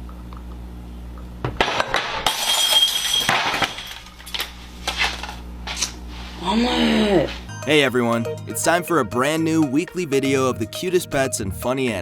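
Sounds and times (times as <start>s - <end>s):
dish crashing and breaking: 1.6s - 5.2s.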